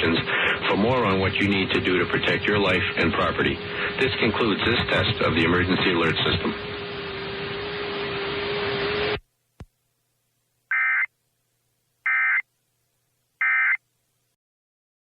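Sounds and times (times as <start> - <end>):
hiss with low hum: 0.0 - 7.7
digital data tone bursts: 10.7 - 11.1, 12.1 - 12.4, 13.4 - 13.8.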